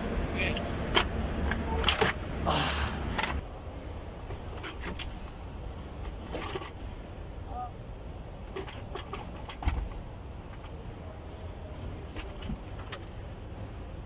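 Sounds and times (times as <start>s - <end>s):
metallic clinks and knocks: 6.0s - 6.8s, 8.5s - 10.8s.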